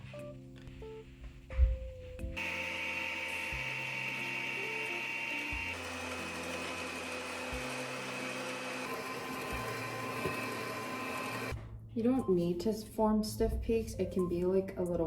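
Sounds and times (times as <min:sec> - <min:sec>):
soft background music: 0:00.0 - 0:15.0
electric mixer whirring: 0:02.4 - 0:11.5.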